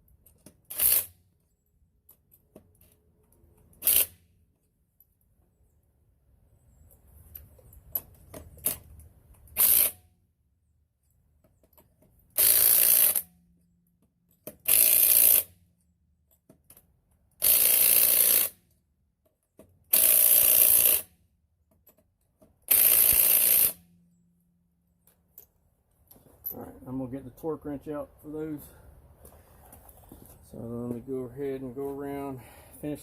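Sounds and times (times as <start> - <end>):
cordless power tool bursts: 0.7 - 1.2, 3.8 - 4.2, 9.6 - 10.0, 12.4 - 13.2, 14.6 - 15.5, 17.4 - 18.6, 19.9 - 21.1, 22.7 - 23.8.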